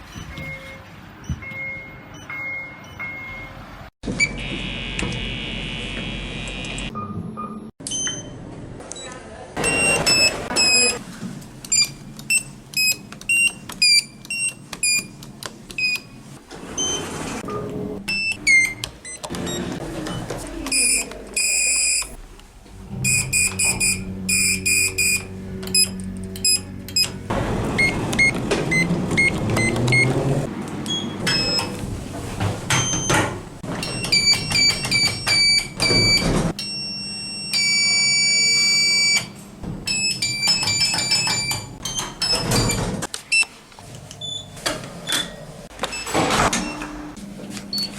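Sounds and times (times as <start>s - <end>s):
elevator button beeps: 0.1s - 3.6s, 6.9s - 8.4s, 9.6s - 11.0s, 11.7s - 15.2s, 16.8s - 19.7s, 20.7s - 22.2s, 23.0s - 27.2s, 27.8s - 30.2s, 30.9s - 31.8s, 32.7s - 33.2s, 33.8s - 39.3s
elevator chime tones: 23.0s - 27.2s.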